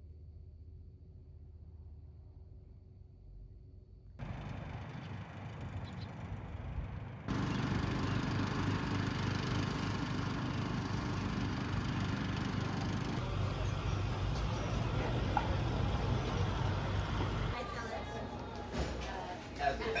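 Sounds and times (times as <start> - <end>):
car engine and road noise: 4.2 - 17.6.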